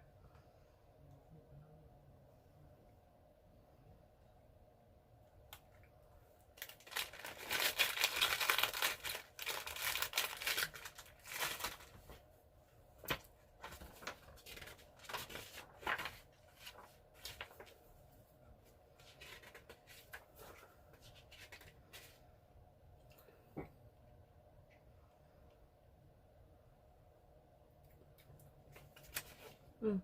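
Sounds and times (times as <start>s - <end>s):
cookie packaging crinkling: 6.5s - 12.2s.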